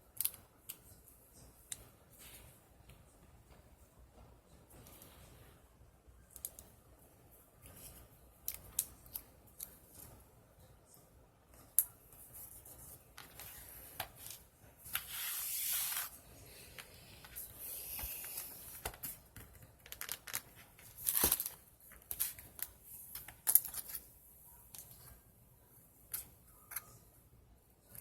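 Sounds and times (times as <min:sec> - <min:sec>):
paper rustling and rasping: 0:12.5 - 0:16.2.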